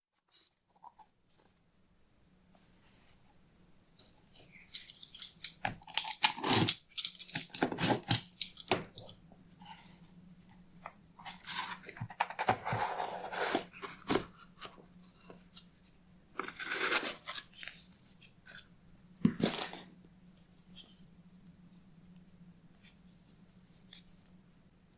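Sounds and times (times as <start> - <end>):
faint steady hum: 0.2 - 24.9
crackling handling noise: 3.9 - 21.1.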